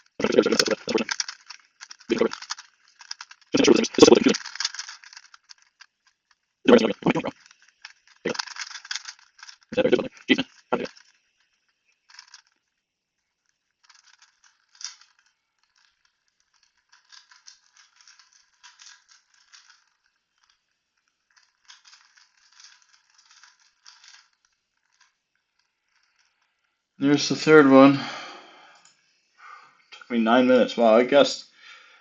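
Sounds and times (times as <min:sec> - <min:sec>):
plastic puzzle cube clicking: 0:00.0 - 0:11.2.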